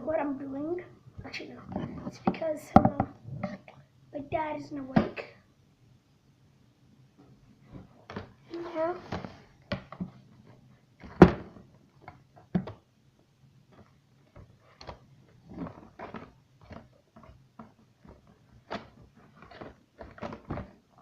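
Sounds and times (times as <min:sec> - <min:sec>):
objects knocking and scraping: 0:01.7 - 0:03.7.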